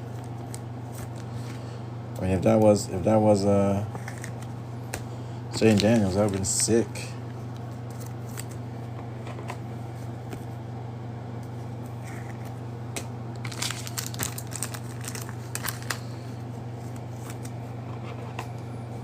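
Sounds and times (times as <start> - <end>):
plastic wrapper crinkling: 5.6 - 6.7, 13.4 - 16.2.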